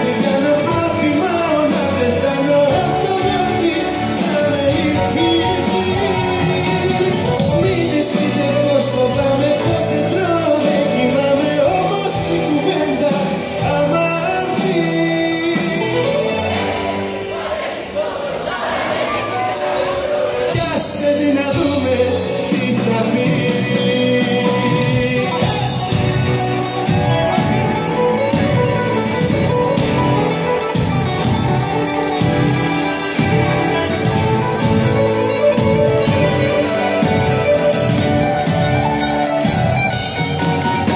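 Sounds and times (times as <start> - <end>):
live band playing popular music: 0.0 - 40.9
plucked strings over a steady beat: 20.4 - 40.9.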